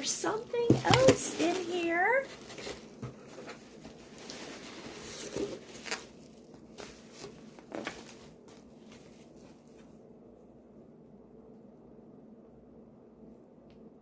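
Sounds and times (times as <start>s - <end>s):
packing material rustling: 0.5s - 9.9s.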